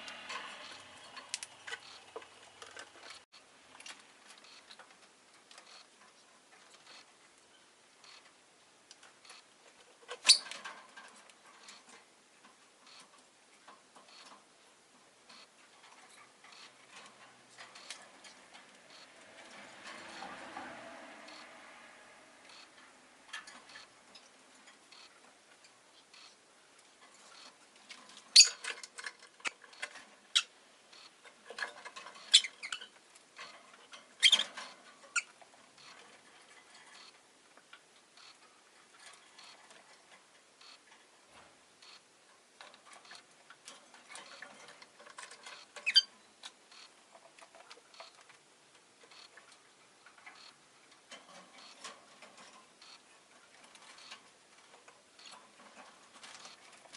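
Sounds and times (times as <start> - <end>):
faint clicking and scratching: 0.0 - 56.9
lovebird chirping: 45.8 - 46.1.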